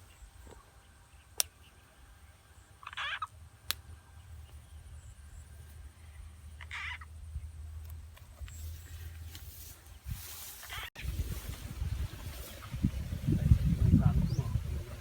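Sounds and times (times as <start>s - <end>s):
frog calls: 2.8s - 3.4s, 6.5s - 7.2s.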